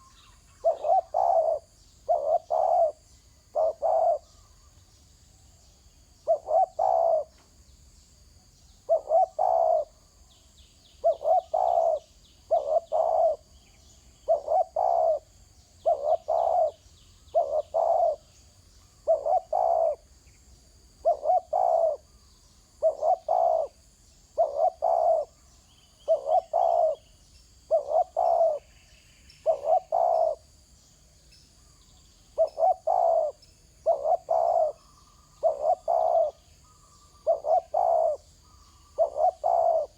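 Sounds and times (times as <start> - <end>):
dove cooing: 0.0 - 4.6, 6.2 - 7.4, 8.9 - 10.0, 11.0 - 18.3, 19.0 - 20.1, 21.0 - 22.1, 22.8 - 25.4, 26.0 - 27.0, 27.7 - 28.8, 29.4 - 30.4, 32.3 - 39.9.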